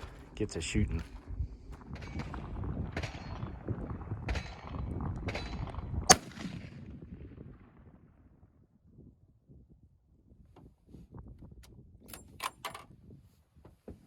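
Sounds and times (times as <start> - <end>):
wind rumbling on microphone: 0.0 - 14.0
rifle shot: 1.9 - 7.4.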